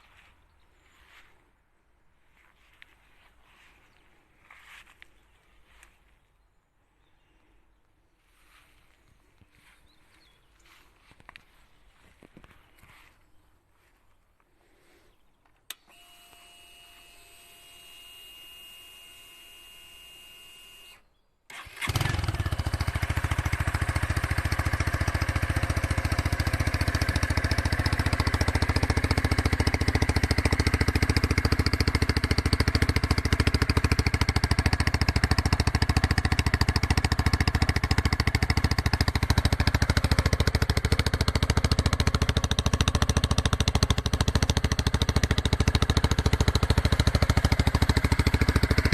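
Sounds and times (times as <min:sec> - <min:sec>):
motorcycle engine starting and running: 0:08.2 - 0:13.2, 0:15.5 - 0:48.9
click: 0:15.4 - 0:16.5.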